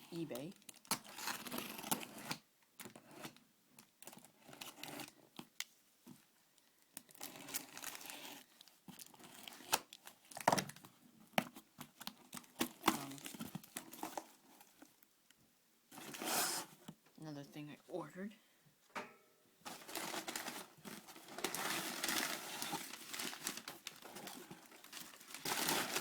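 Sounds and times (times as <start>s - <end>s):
packaging tearing and crumpling: 7.0s - 10.8s, 11.8s - 14.8s, 19.7s - 26.0s.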